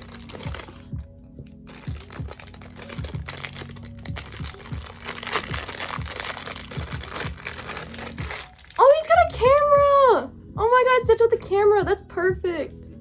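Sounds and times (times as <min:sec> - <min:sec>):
plastic packaging crinkling: 0:00.0 - 0:09.3
background music: 0:00.0 - 0:13.0.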